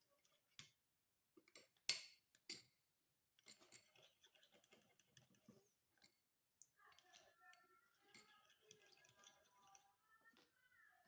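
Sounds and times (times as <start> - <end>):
spoon clicking and scraping container: 8.0 - 9.9.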